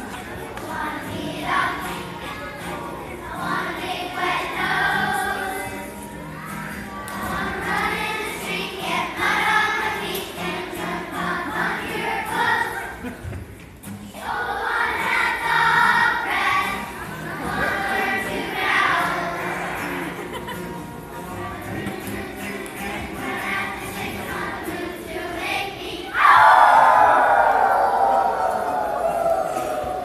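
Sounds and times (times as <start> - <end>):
children's choir singing: 0.0 - 13.2, 14.1 - 30.0
musical accompaniment: 15.1 - 24.9.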